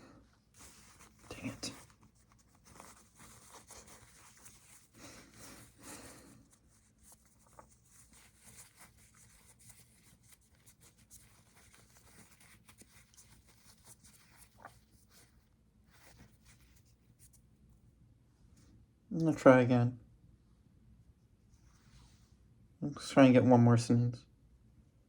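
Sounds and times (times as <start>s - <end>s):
paper tissue rustling: 0.4s - 17.6s.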